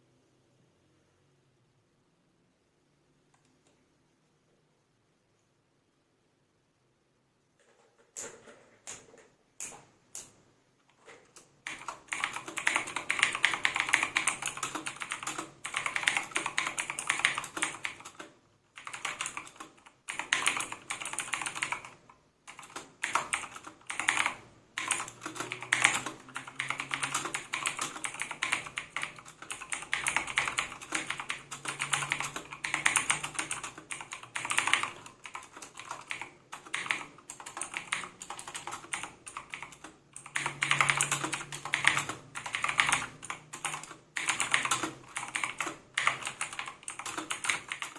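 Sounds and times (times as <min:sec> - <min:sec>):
mechanical keyboard typing: 0:11.0 - 0:47.9.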